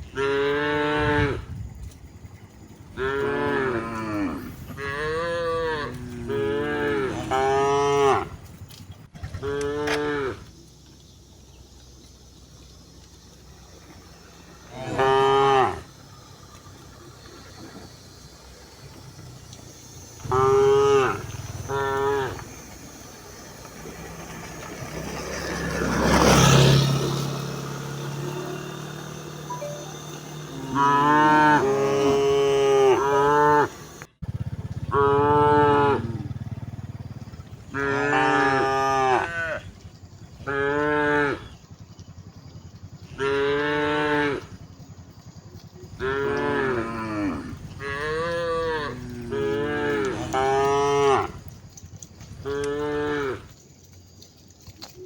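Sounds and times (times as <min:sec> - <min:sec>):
cattle mooing: 0:00.1 - 0:01.5, 0:03.0 - 0:08.4, 0:09.3 - 0:10.5, 0:14.6 - 0:16.1, 0:19.8 - 0:22.8, 0:28.1 - 0:34.1, 0:34.8 - 0:36.9, 0:37.7 - 0:39.7, 0:40.5 - 0:41.6, 0:43.2 - 0:44.6, 0:45.9 - 0:51.5, 0:52.4 - 0:53.5.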